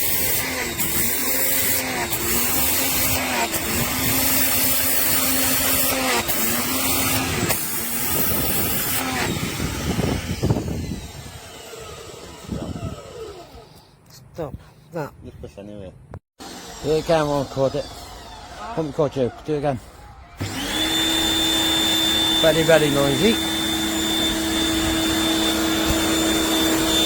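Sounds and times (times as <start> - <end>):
pressure washer motor humming: 0.0 - 13.8, 20.4 - 27.0.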